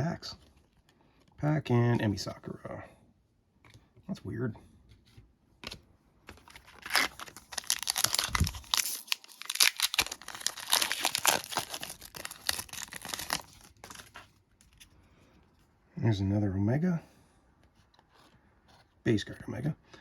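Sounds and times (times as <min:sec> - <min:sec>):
wrapper tearing and crinkling: 0:06.5 - 0:14.2.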